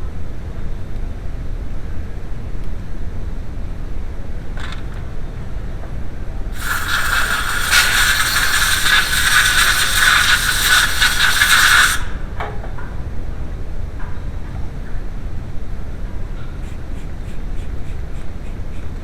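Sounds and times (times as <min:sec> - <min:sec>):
gas hissing with whistling tone: 0:06.5 - 0:12.4.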